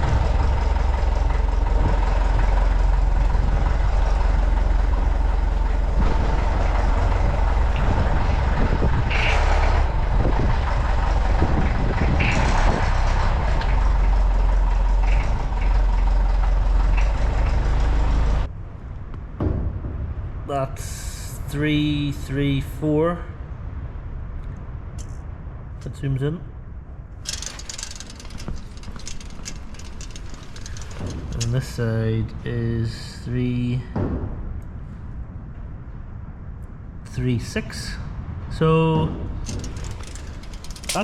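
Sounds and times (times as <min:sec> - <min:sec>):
heavy diesel engine running: 0:00.0 - 0:18.5, 0:27.3 - 0:32.1, 0:39.4 - 0:41.0
light clanks: 0:27.3 - 0:31.8, 0:39.4 - 0:41.0.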